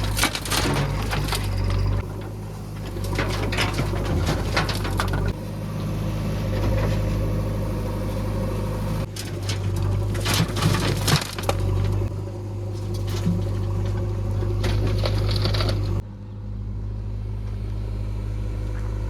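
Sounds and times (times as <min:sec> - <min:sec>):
bucket clattering: 0:00.0 - 0:05.4, 0:09.1 - 0:16.0
diesel engine running: 0:00.0 - 0:19.0.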